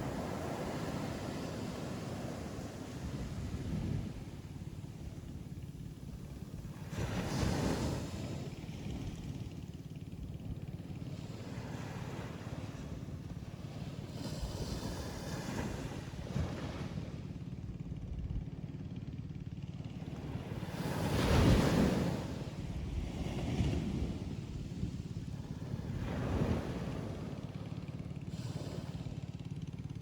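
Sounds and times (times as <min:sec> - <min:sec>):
ocean surf breaking on beach: 0:00.0 - 0:05.6, 0:06.3 - 0:09.4, 0:11.0 - 0:17.0, 0:20.1 - 0:29.1.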